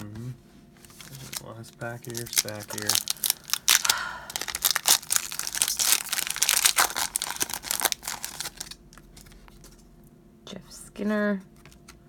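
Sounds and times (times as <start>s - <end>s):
wrapper tearing and crinkling: 0.9s - 9.3s.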